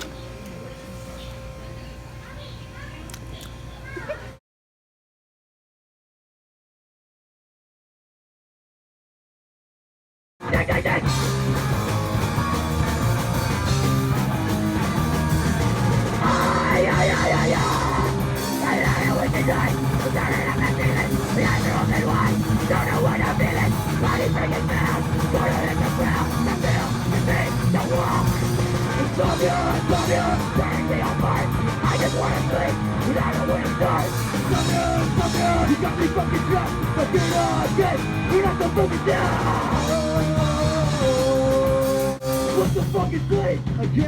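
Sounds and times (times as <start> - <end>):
punk band playing live: 10.4 - 44.0.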